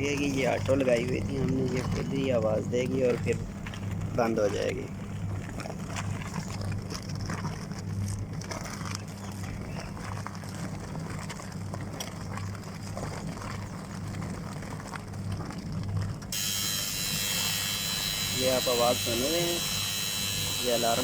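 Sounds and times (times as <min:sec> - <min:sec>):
washing machine motor humming: 0:00.0 - 0:06.7, 0:16.3 - 0:21.0.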